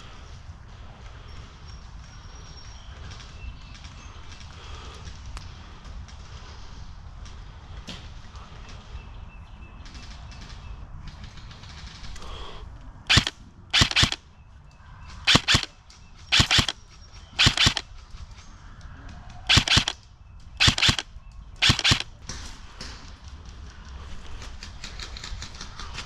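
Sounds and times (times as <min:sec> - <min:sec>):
airsoft rifle shots: 0:13.1 - 0:14.2, 0:15.3 - 0:16.8, 0:17.4 - 0:17.9, 0:19.5 - 0:20.0, 0:20.6 - 0:22.2.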